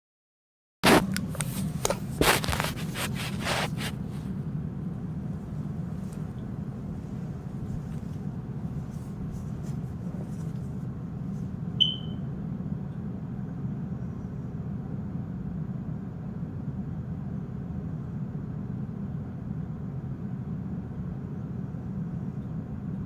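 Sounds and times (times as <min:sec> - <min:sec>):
phone handling rustle: 0:00.8 - 0:04.3
short high chirp: 0:11.8 - 0:12.2.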